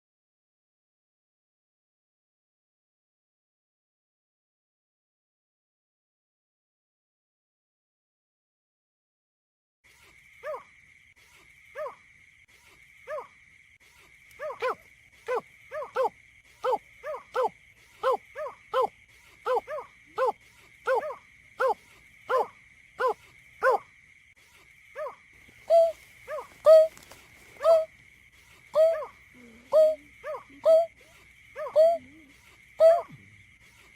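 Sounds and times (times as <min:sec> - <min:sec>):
marsh bird calls: 0:24.9 - 0:33.9.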